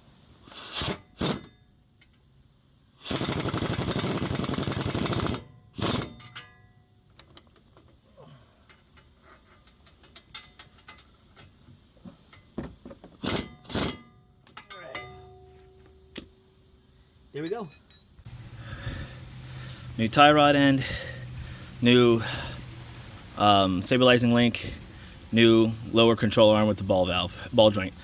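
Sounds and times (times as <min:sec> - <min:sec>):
impact wrench hammering: 0:00.8 - 0:01.5, 0:12.5 - 0:15.4.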